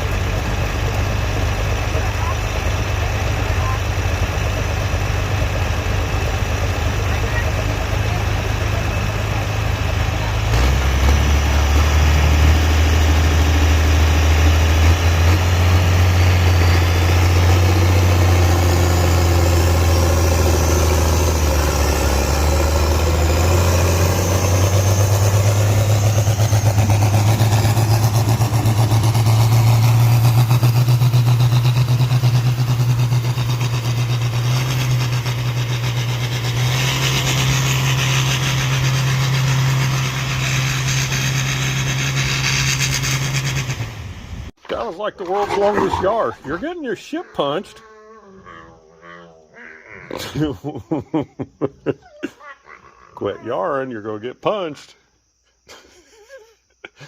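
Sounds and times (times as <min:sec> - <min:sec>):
loud engine running: 0:00.0 - 0:44.6.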